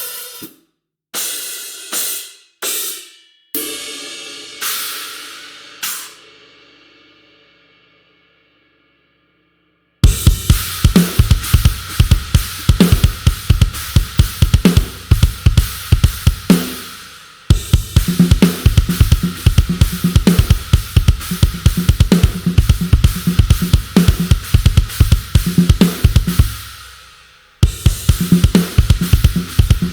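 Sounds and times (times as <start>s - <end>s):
cymbals: 0.0s - 0.5s, 1.2s - 9.0s, 10.0s - 29.9s
kick drum strokes: 10.0s - 26.9s, 27.6s - 29.9s.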